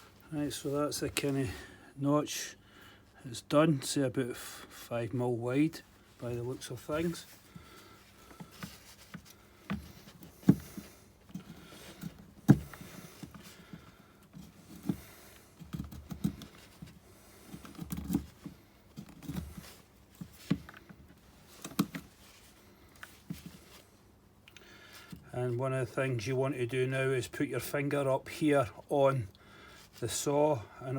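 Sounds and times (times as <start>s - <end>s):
scraping rubs: 5.8s - 24.0s.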